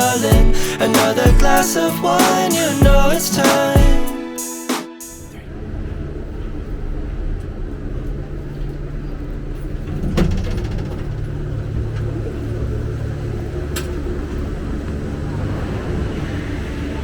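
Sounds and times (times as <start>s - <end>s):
low vehicle rumble: 5.3s - 17.0s.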